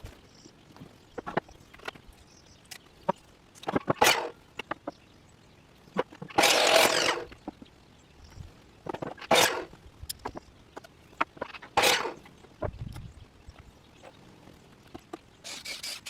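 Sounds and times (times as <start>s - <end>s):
short rasping bursts: 6.4s - 7.3s, 15.4s - 16.0s.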